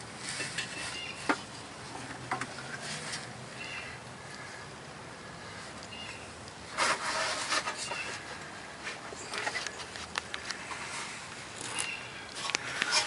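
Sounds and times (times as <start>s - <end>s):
rubbing and scraping handling noises: 0.0s - 3.4s, 6.7s - 13.0s.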